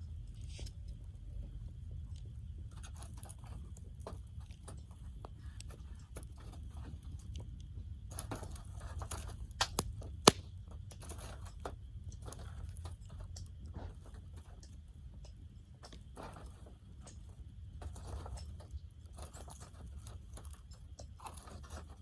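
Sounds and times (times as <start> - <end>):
low steady rumble: 0.0 - 22.0
campfire crackling and popping: 9.0 - 11.0.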